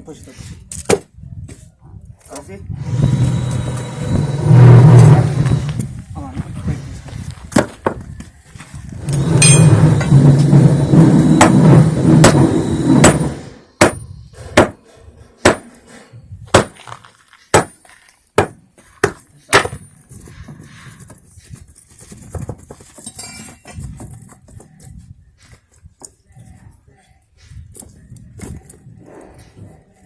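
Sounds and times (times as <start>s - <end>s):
loud steady noise with low hum: 2.8s - 5.8s, 9.0s - 14.0s
hammer striking concrete: 9.4s - 10.4s, 11.2s - 14.8s, 15.4s - 15.8s, 16.5s - 16.8s, 17.5s - 17.8s, 18.4s - 20.0s.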